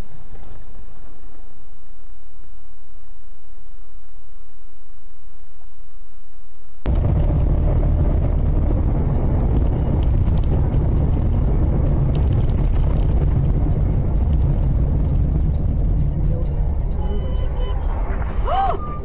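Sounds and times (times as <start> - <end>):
car engine and road noise: 6.8 - 19.0.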